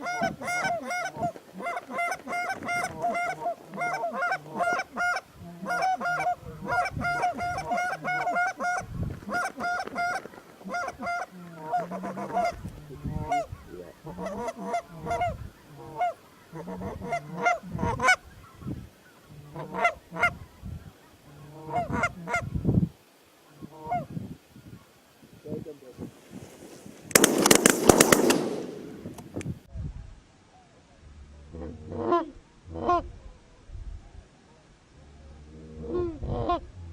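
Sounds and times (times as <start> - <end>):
goose honks and clucks: 0.0 - 20.5, 21.3 - 22.6, 31.5 - 33.2, 35.8 - 36.9.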